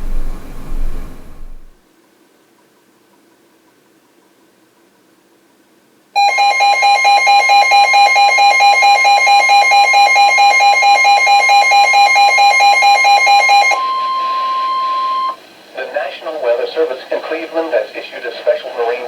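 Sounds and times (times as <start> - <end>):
electronic alarm beeping: 6.2 - 15.4
steady high tone: 10.7 - 15.4.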